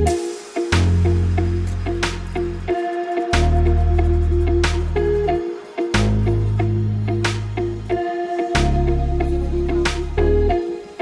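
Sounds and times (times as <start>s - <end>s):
held bass notes: 8.6s - 10.6s.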